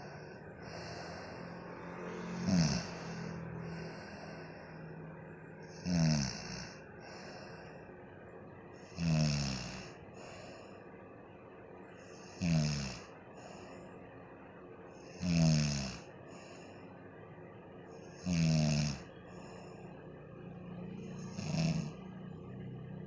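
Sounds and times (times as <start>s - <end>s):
woman snoring: 0.0s - 7.7s, 8.8s - 10.6s, 12.0s - 13.6s, 15.0s - 16.6s, 17.9s - 20.0s, 20.6s - 22.7s
quiet breathing: 0.0s - 23.0s.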